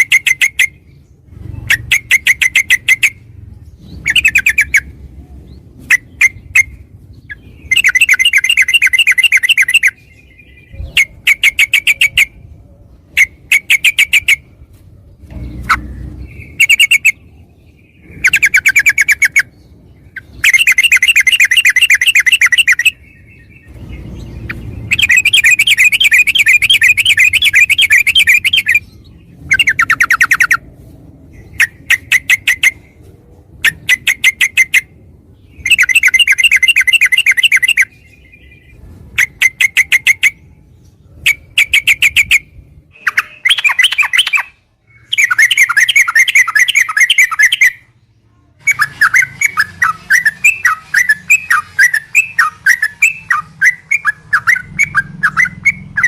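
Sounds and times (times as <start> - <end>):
sharp chattering bird notes: 0.0 - 5.0, 5.6 - 12.4, 15.2 - 30.7, 33.6 - 37.9, 41.2 - 47.8
bird singing rolling trills: 0.0 - 56.0.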